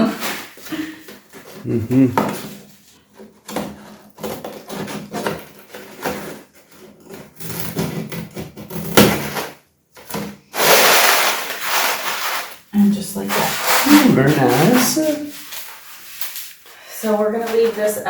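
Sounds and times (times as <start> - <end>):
loud rushing scrape: 10.6 - 12.6.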